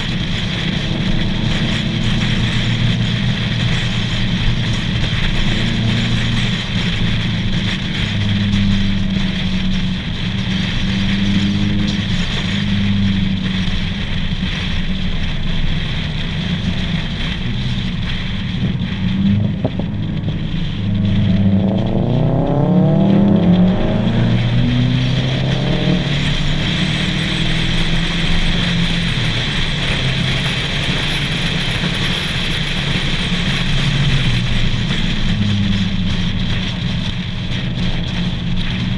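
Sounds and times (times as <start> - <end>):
car engines running: 0.0 - 38.9
wind and road noise: 0.0 - 38.9
engine revving up: 19.1 - 31.0.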